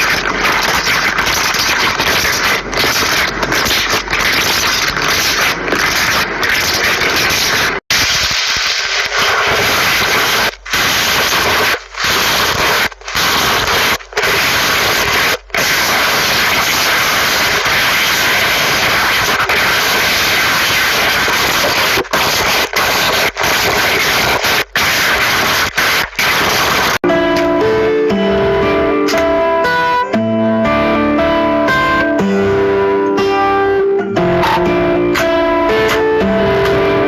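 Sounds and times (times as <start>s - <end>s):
slime hissing by hand: 0.0s - 27.0s.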